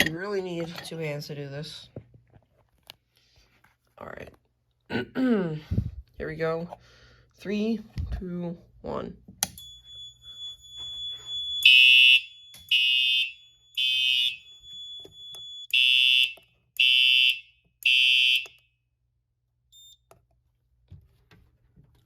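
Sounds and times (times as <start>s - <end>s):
fire alarm horn blasts: 9.6s - 18.8s.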